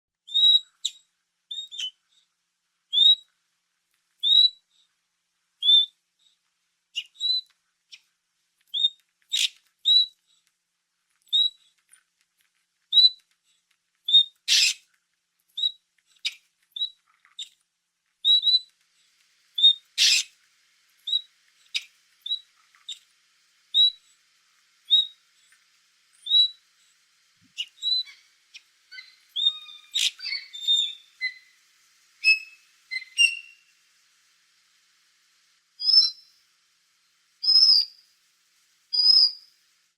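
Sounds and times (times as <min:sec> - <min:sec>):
otter chirping: 0:00.3 - 0:02.2, 0:02.9 - 0:03.3, 0:04.2 - 0:04.6, 0:05.6 - 0:06.0, 0:06.9 - 0:08.1, 0:08.7 - 0:10.2, 0:11.3 - 0:11.8, 0:12.9 - 0:13.3, 0:14.0 - 0:14.9, 0:15.6 - 0:17.6, 0:18.2 - 0:18.7, 0:19.6 - 0:20.4, 0:21.0 - 0:23.1, 0:23.7 - 0:24.2, 0:24.8 - 0:25.5, 0:26.1 - 0:33.8, 0:35.8 - 0:36.4, 0:37.4 - 0:38.0, 0:38.9 - 0:39.5.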